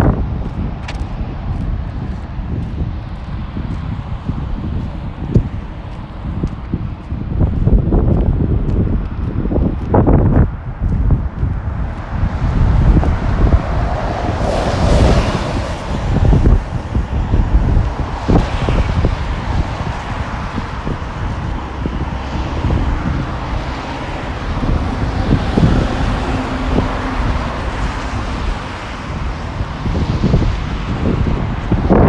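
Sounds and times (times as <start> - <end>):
road traffic: 0.0 - 32.0
wind buffeting microphone: 0.0 - 32.0
car hissing past on wet road: 13.6 - 16.6.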